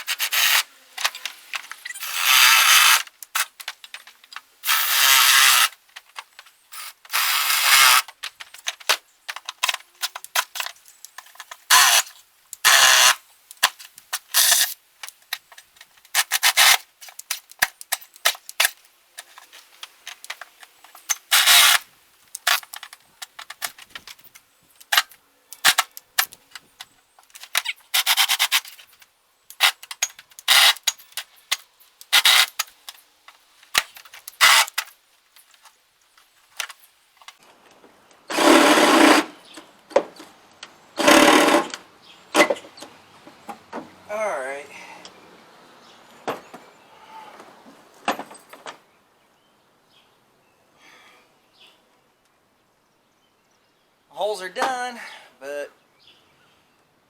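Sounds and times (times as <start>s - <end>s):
small clicks and knocks: 8.0s - 12.8s, 13.4s - 38.2s
power drill boring through metal: 38.3s - 39.3s, 41.0s - 41.7s.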